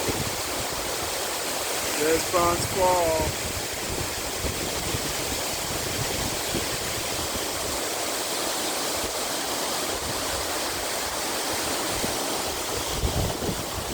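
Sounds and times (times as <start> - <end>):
waterfall rushing: 0.0 - 13.9.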